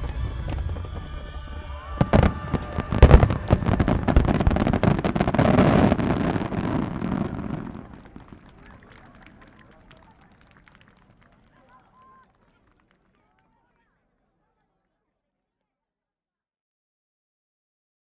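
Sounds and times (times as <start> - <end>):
fireworks popping and crackling: 0.0 - 1.2, 2.0 - 9.8
firework shells booming: 2.0 - 8.4.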